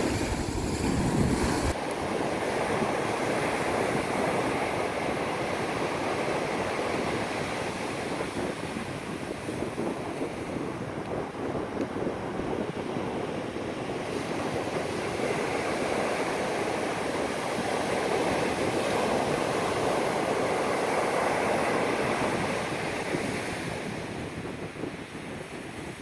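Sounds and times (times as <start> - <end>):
ocean surf breaking: 0.0 - 8.0.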